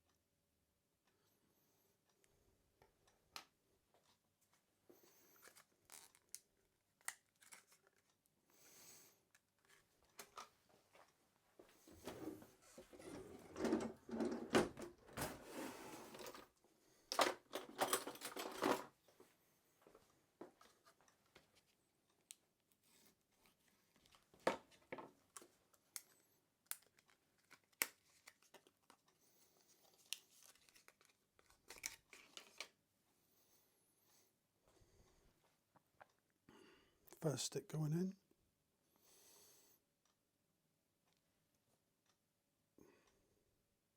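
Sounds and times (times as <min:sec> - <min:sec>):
plastic packaging crinkling and tearing: 0:05.4 - 0:08.1, 0:26.7 - 0:29.0.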